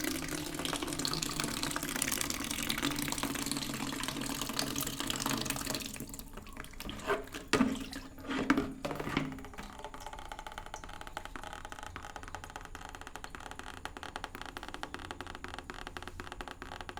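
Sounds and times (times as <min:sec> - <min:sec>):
water running from a tap: 0:00.0 - 0:14.7
tap knocking and squeaking: 0:06.4 - 0:16.9.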